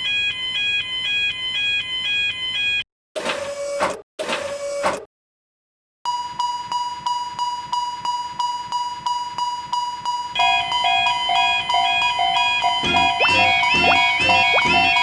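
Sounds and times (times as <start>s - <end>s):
alternating two-tone chime: 6.1s - 15.0s
railroad crossing bell ringing: 6.1s - 15.0s.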